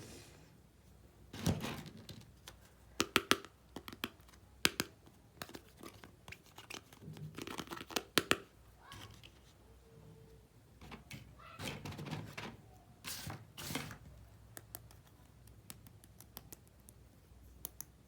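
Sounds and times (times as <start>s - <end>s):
rustling and crinkling: 5.4s - 9.6s.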